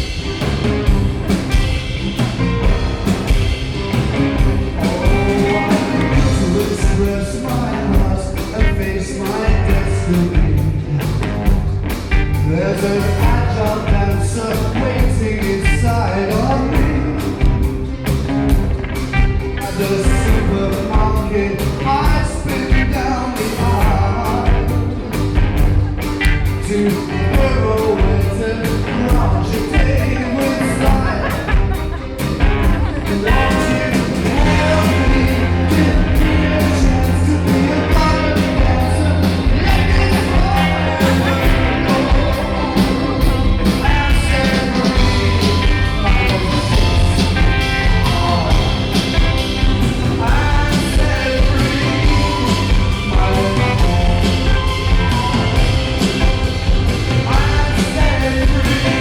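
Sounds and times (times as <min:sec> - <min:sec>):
live rock-pop band: 0:00.0 - 0:59.0
person singing: 0:04.6 - 0:11.3, 0:19.5 - 0:59.0.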